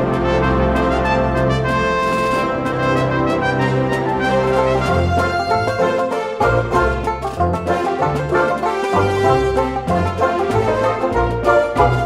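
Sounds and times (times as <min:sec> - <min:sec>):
upbeat music with plucked strings: 0:00.0 - 0:12.0.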